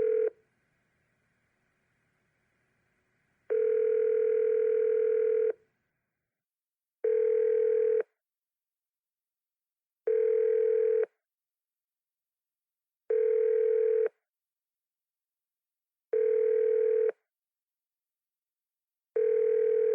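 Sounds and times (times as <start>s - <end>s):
telephone ringback tone: 0.0s - 0.4s, 3.5s - 5.6s, 7.0s - 8.0s, 10.1s - 11.1s, 16.2s - 17.1s, 19.2s - 19.9s.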